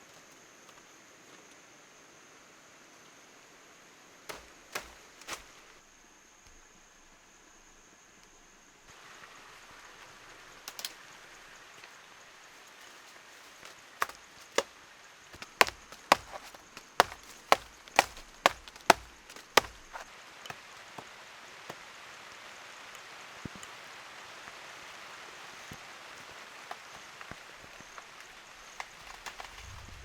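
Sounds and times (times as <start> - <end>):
faint steady hiss: 0.0 - 30.0
sharp chopping strikes: 4.3 - 5.7, 13.6 - 14.7, 15.4 - 20.1.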